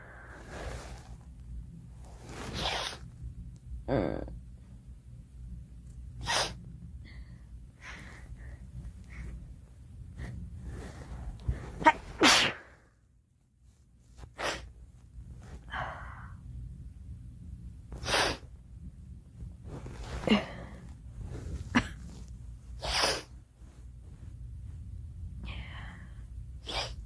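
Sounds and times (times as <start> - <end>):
girl sneezing: 6.2 - 6.6, 11.8 - 12.7, 22.8 - 23.3.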